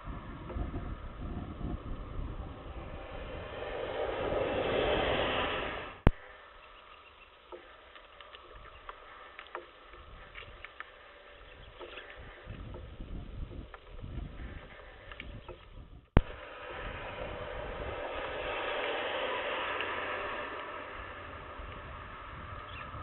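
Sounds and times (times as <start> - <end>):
rushing noise: 0.0 - 6.9, 16.2 - 23.0
wind rumble on microphone: 0.0 - 23.0
faint bird chirps: 6.1 - 15.9, 21.8 - 23.0.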